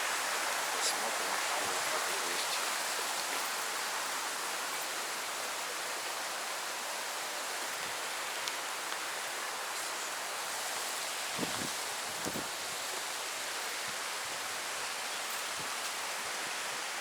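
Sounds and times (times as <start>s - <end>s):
waterfall rushing: 0.0s - 9.7s.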